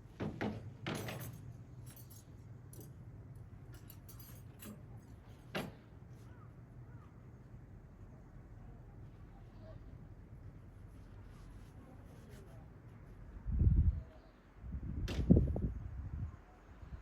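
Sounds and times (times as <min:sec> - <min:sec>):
metallic clinks: 0:00.9 - 0:03.0, 0:03.7 - 0:05.1.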